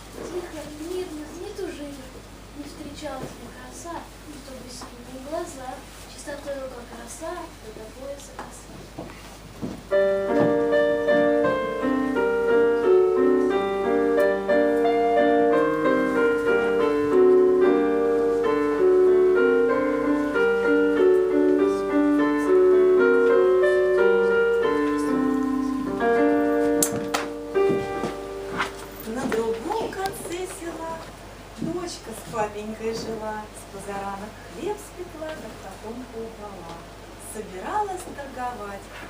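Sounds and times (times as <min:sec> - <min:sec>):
piano music: 0:09.9 - 0:31.0.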